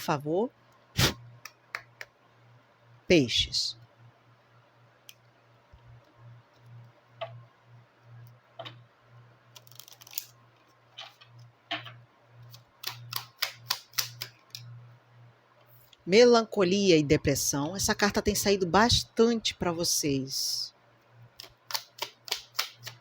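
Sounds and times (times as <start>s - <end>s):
faint low hum: 0.0s - 21.8s
cards being shuffled: 9.6s - 14.7s, 21.4s - 23.0s.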